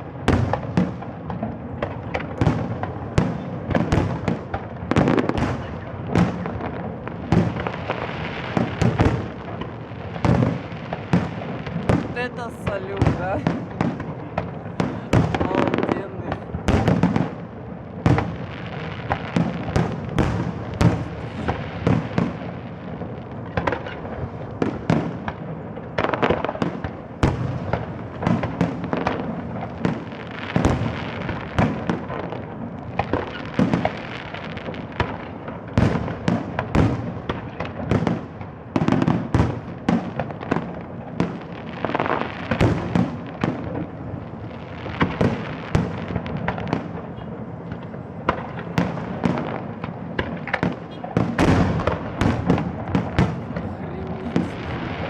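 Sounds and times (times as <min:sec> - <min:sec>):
fireworks bangs and crackles: 0:00.0 - 0:55.0.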